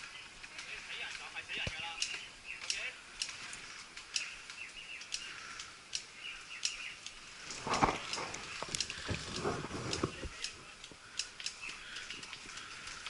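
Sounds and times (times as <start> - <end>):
loud rustle: 7.2 - 10.7.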